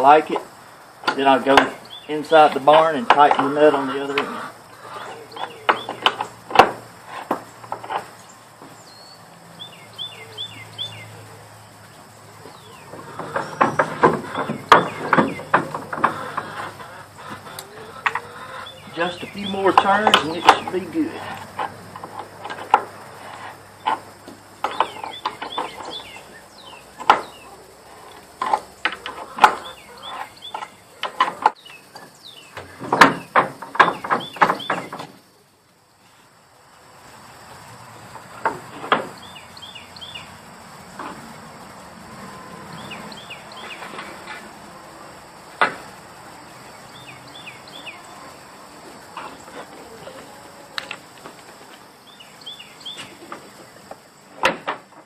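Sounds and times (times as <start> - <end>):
birds chirping: 0.0 - 55.0
sharp metal knocks: 32.6 - 35.2.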